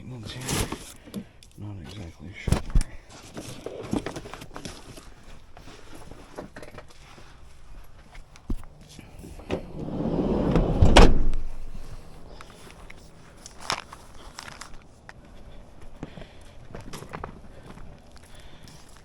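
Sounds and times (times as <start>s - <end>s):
footsteps: 2.4s - 19.0s
vehicle door shutting: 8.6s - 13.2s.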